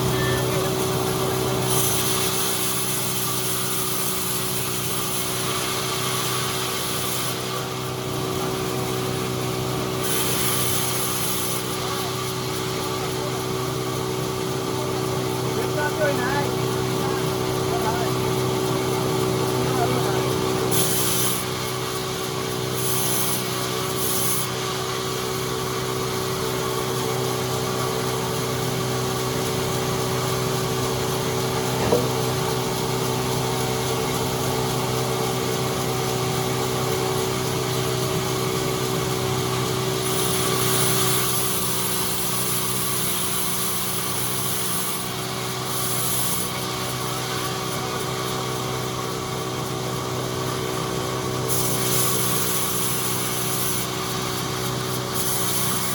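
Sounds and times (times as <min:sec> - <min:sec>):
sharp knock: 0:31.8 - 0:32.3.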